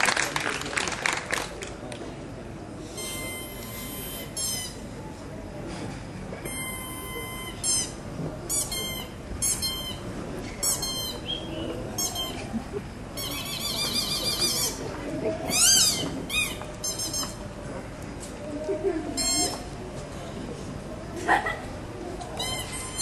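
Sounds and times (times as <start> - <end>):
audience murmur: 0.0 - 23.0
squeaky bird-like calls: 3.0 - 4.9, 6.4 - 17.4, 19.1 - 19.7, 22.4 - 23.0.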